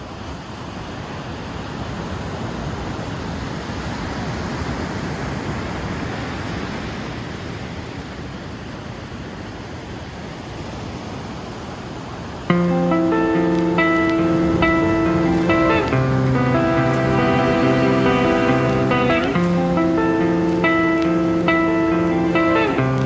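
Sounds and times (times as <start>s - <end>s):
waves breaking: 12.5s - 23.0s.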